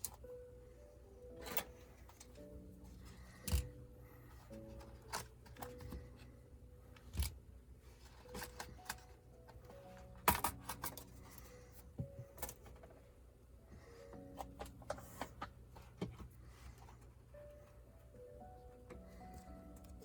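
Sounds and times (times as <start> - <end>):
soft background music: 0.0 - 20.0.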